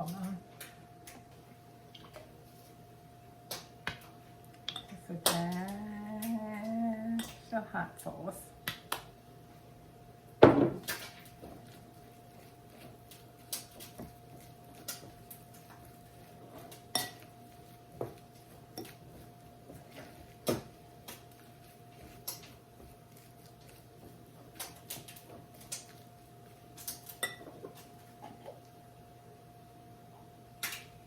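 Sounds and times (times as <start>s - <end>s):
utensil clinking against bowl: 16.6s - 17.3s, 26.8s - 27.8s.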